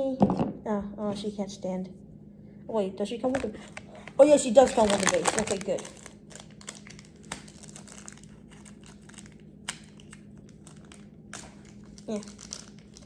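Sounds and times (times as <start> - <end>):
packaging crinkling: 3.3 - 13.0.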